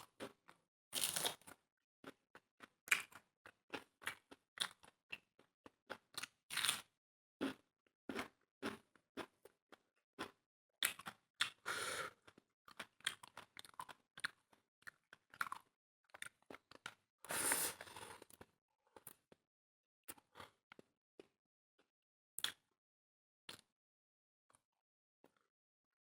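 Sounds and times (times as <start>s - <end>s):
person chewing crunchy food: 2.9s - 19.2s.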